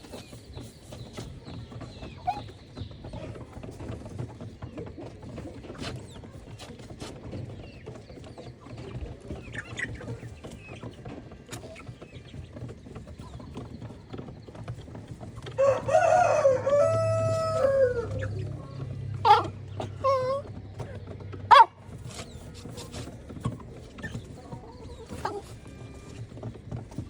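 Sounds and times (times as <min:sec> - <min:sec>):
chicken clucking: 0:00.0 - 0:27.0
chicken scratching: 0:00.0 - 0:27.0
rooster crowing: 0:15.6 - 0:18.4.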